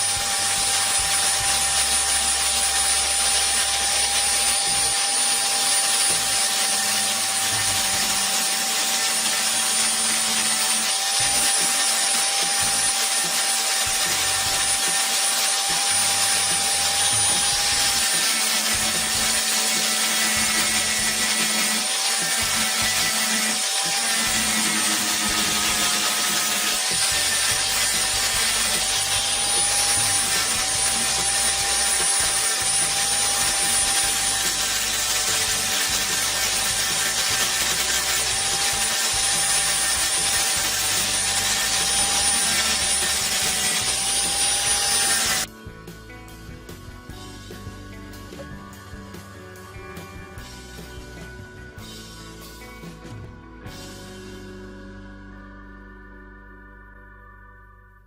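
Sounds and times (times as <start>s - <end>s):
electric motor whining: 0.0s - 45.6s.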